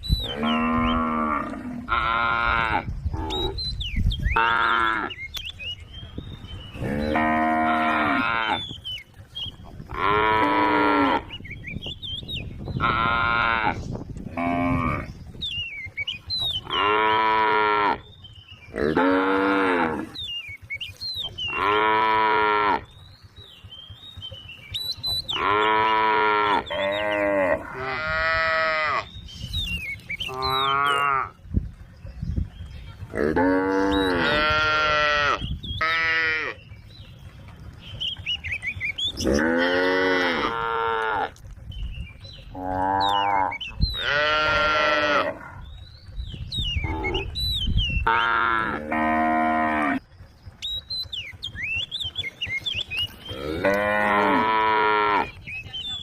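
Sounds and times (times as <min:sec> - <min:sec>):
cows mooing: 0:00.2 - 0:03.6, 0:04.3 - 0:05.2, 0:06.7 - 0:08.8, 0:09.8 - 0:11.4, 0:12.8 - 0:15.2, 0:16.5 - 0:18.1, 0:18.7 - 0:20.6, 0:21.3 - 0:23.0, 0:25.0 - 0:29.2, 0:30.2 - 0:31.4, 0:33.1 - 0:36.7, 0:38.7 - 0:41.4, 0:42.5 - 0:45.7, 0:46.8 - 0:47.4, 0:48.0 - 0:50.2, 0:52.9 - 0:55.4.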